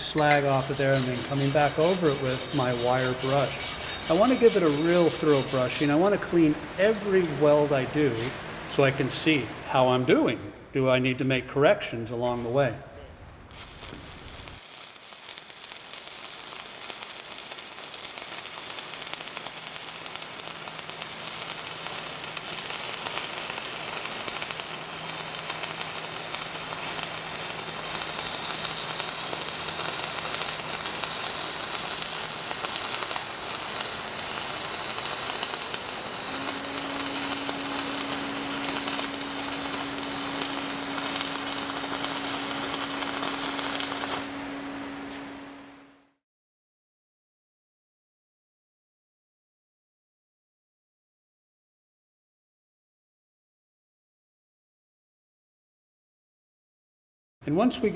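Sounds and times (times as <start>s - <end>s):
welding arc crackling sizzle: 0.0s - 8.9s, 13.5s - 46.0s
faint hum: 33.2s - 46.2s.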